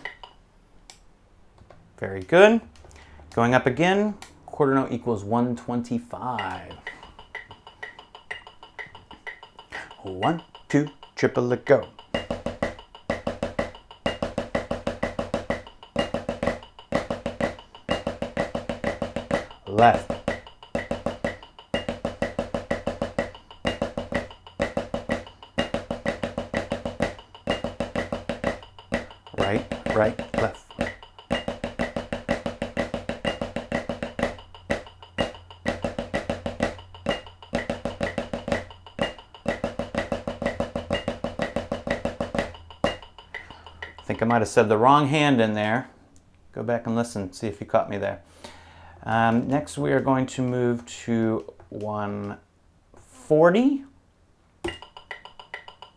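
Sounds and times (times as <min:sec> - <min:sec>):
snare drum triplets: 0:09.7 - 0:44.7.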